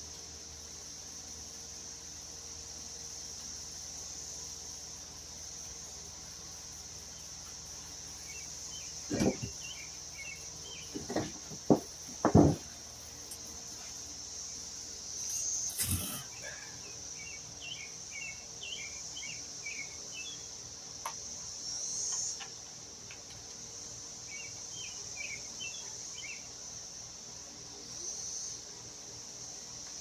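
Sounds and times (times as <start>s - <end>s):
insects trilling: 0.0s - 30.0s
rustle and knock: 9.0s - 9.8s, 10.7s - 14.0s.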